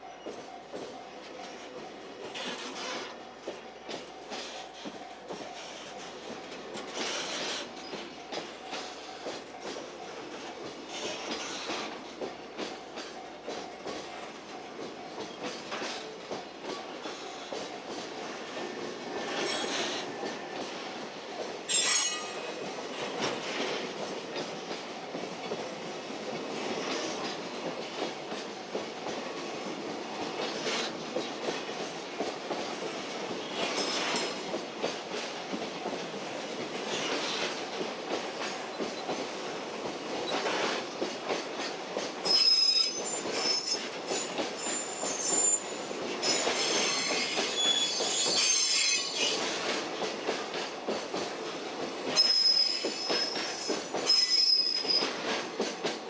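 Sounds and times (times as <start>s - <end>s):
freight train rumbling: 0.0s - 56.0s
high-pitched wheel squeals: 21.7s - 22.4s, 42.3s - 49.4s, 52.2s - 55.2s.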